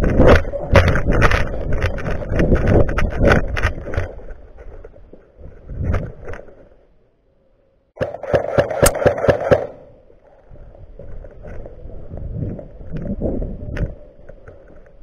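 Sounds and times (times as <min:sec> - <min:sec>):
rustling movement: 0:00.0 - 0:06.9
airsoft gun shots: 0:08.0 - 0:09.8.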